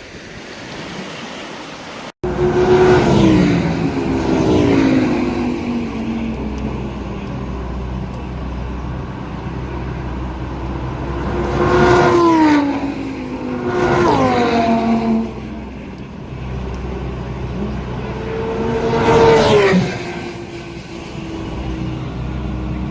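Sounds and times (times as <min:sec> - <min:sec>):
steady low rumble: 0:02.2 - 0:11.9
vehicles passing by: 0:02.2 - 0:22.9.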